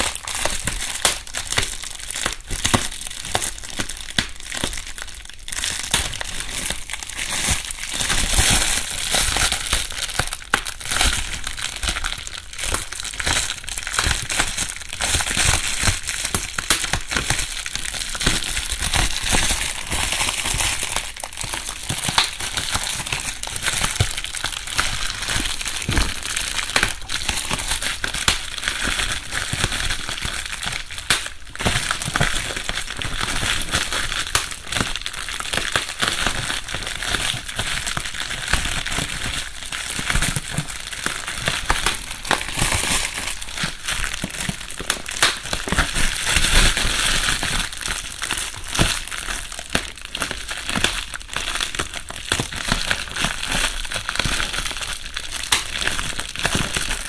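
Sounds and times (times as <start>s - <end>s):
bubble wrap crinkling: 0.0s - 57.0s.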